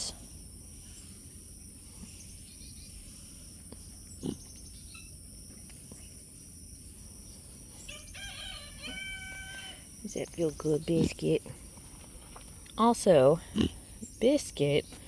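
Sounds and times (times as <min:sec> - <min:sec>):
faint steady background noise: 0:00.0 - 0:15.0
pig grunting: 0:04.1 - 0:04.5, 0:13.4 - 0:13.8.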